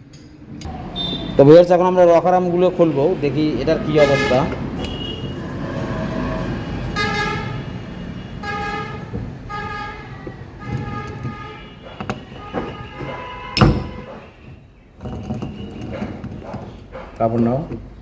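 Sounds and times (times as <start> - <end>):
vehicle horn tooting: 0.9 - 1.4, 4.0 - 14.6
loud knock: 13.6 - 14.2.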